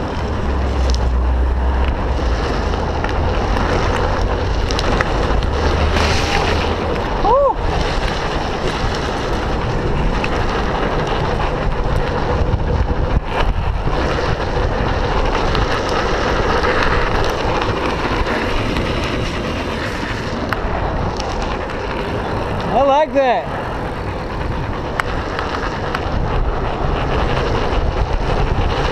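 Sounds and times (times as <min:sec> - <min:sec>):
wheels rolling on pavement: 0:00.0 - 0:28.9
wind on microphone: 0:00.0 - 0:28.9.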